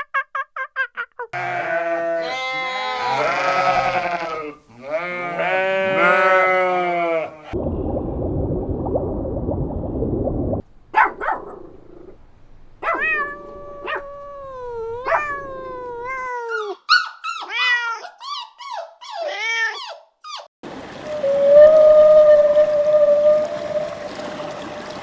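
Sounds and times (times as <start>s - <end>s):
puppies whining and yipping: 15.0s - 20.5s.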